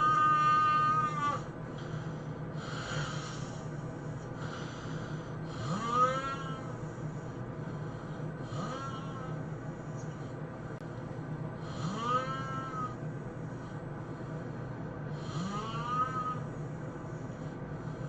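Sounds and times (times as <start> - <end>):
steady low hum: 0.0 - 18.0
hissing breaths: 1.6 - 18.0
man snoring with whistling squeal: 5.6 - 6.7, 8.5 - 9.4, 11.8 - 13.0, 15.2 - 16.4.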